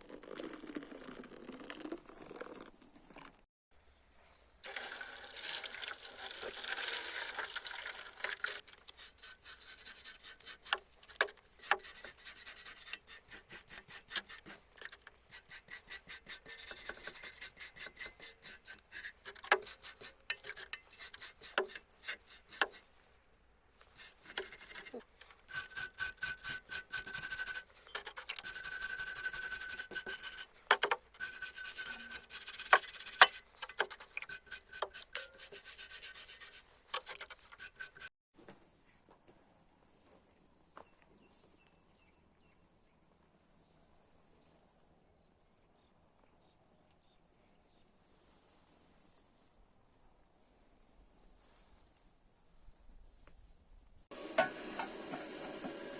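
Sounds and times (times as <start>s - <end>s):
file rasping on steel: 8.8s - 23.0s, 23.8s - 38.1s.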